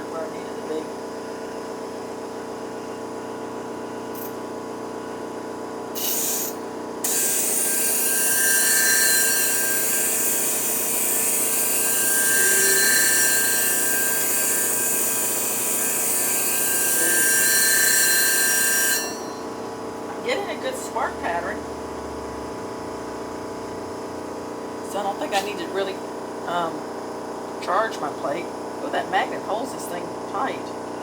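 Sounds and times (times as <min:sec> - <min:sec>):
sharpening machine motor humming: 0:05.9 - 0:28.4
blade grinding against hone plate: 0:06.0 - 0:19.6.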